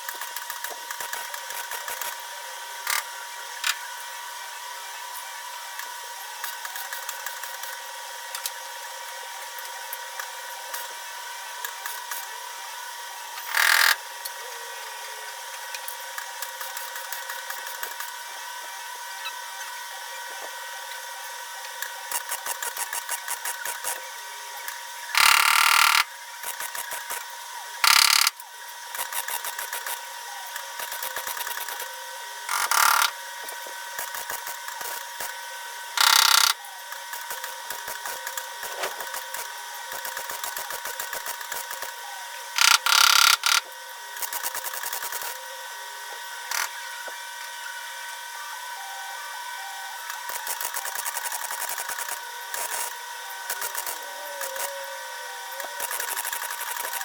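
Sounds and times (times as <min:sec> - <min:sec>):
welder crackling: 0:28.9 - 0:42.0, 0:50.0 - 0:54.8, 0:55.4 - 0:57.0.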